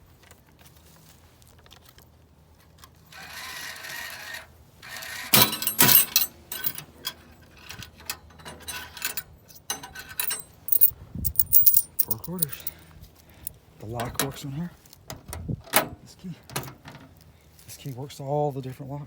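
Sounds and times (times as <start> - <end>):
vending machine clicks and clatter: 5.4 - 6.9.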